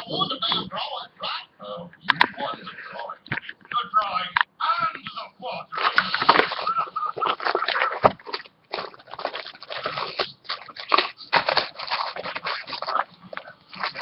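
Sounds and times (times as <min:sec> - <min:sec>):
plastic wrapper crinkling and tearing: 0:05.8 - 0:14.0.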